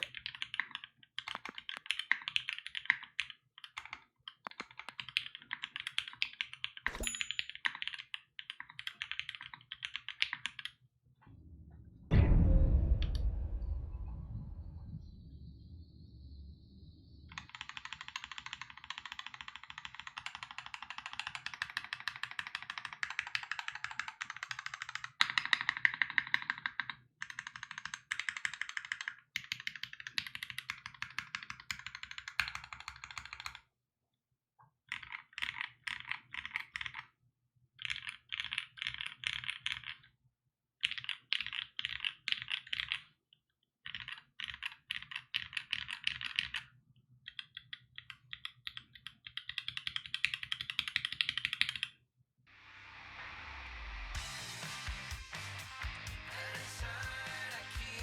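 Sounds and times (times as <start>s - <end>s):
mechanical keyboard typing: 0.0s - 10.8s, 17.3s - 33.6s, 34.9s - 37.1s, 37.8s - 40.1s, 40.8s - 43.1s, 43.8s - 46.7s, 47.3s - 52.0s.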